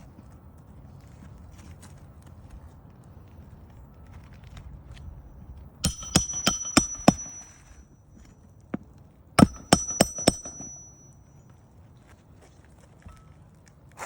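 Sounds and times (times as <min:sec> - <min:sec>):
hammer blows on metal: 0:05.8 - 0:07.8, 0:09.4 - 0:11.3.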